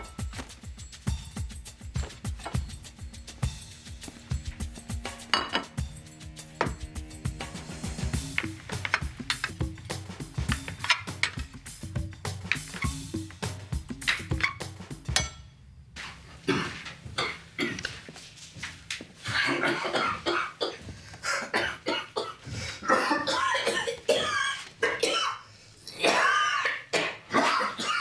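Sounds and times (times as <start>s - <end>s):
man coughing: 19.3s - 28.0s.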